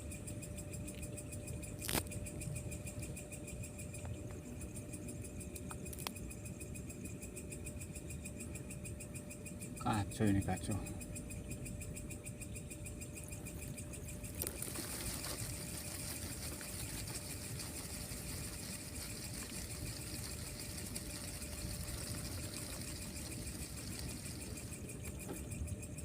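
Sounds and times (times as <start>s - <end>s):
insects chirping: 0.0s - 26.0s
steady hiss: 12.8s - 25.9s.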